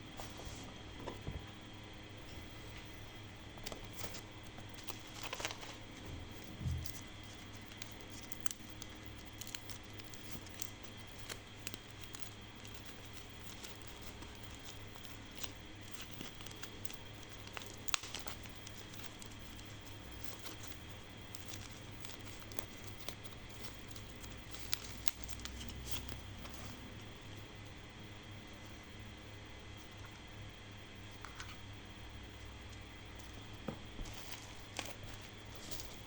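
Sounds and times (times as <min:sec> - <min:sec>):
packaging clicks and crinkles: 0:03.5 - 0:27.1, 0:33.2 - 0:36.0.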